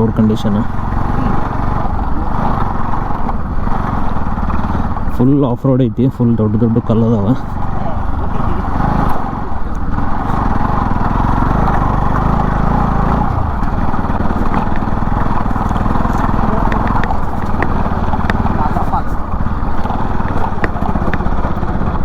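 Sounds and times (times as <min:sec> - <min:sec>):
motorcycle engine running: 0:00.0 - 0:22.0
clattering knocks: 0:13.1 - 0:22.0.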